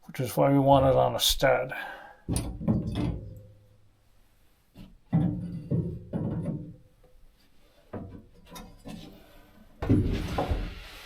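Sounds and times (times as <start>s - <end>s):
wire shelf knocking and scraping: 2.3s - 3.8s, 4.8s - 7.2s.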